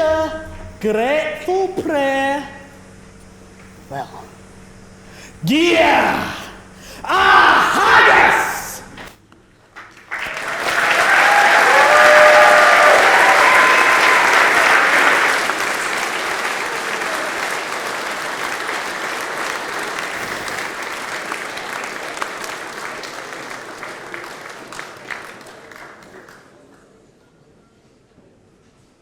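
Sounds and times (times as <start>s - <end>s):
audience applauding: 9.7s - 26.9s.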